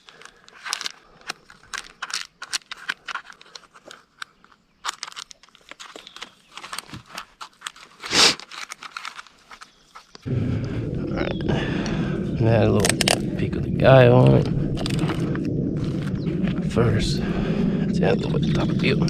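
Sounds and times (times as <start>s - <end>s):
plastic packaging crinkling: 0.0s - 10.3s, 14.8s - 16.2s.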